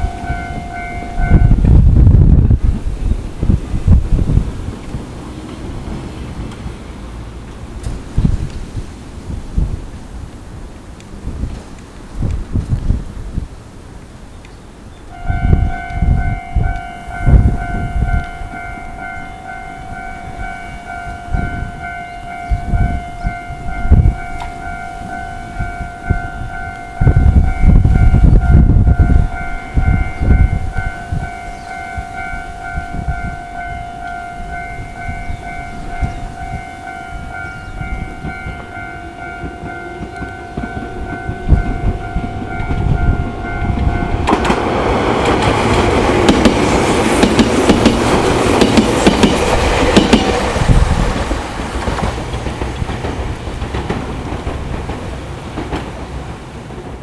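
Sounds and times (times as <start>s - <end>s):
level-crossing warning bell: 0.0s - 2.6s, 15.1s - 50.6s
train noise: 0.0s - 57.0s
low rumbles: 15.1s - 57.0s.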